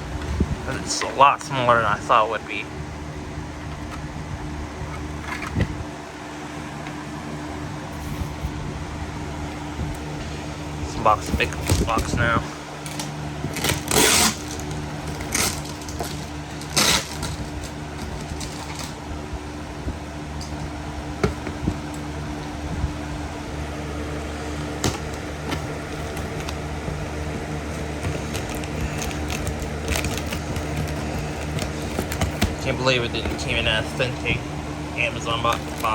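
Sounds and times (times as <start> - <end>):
low mechanical hum: 0.0 - 35.9
cardboard box scraping and ripping: 7.9 - 8.6, 13.4 - 19.0, 24.8 - 33.8.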